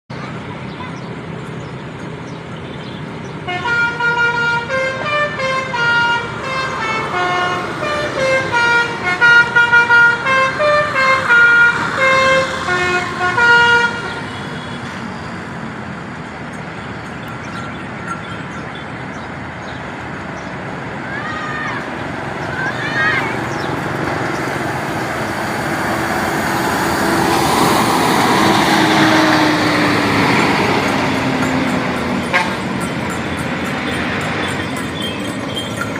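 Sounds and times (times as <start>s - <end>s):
musical bus horn tune: 3.4s - 15.0s, 26.5s - 34.5s.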